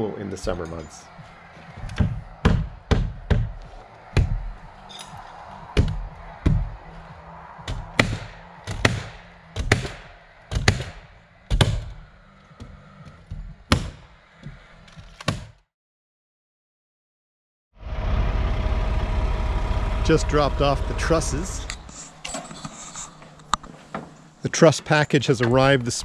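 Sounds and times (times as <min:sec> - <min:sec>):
nails hammered into wood panels: 0:08.0 - 0:11.9, 0:13.7 - 0:14.0.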